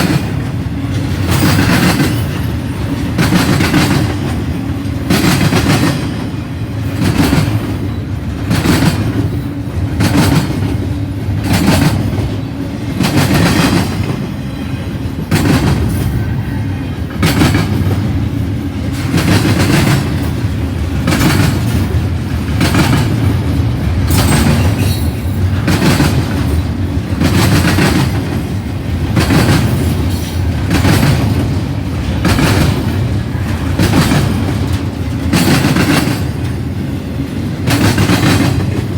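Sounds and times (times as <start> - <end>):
freight train rumbling past: 0.0 - 38.9
wheels clickety-clack on rail joints: 0.0 - 38.9.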